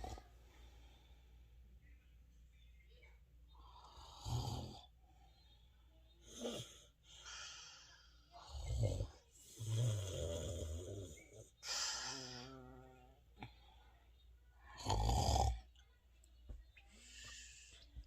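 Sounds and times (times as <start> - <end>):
quiet breathing: 0.0 - 15.0, 15.6 - 18.0
loud snores: 3.7 - 4.9, 8.4 - 13.0, 14.8 - 15.6.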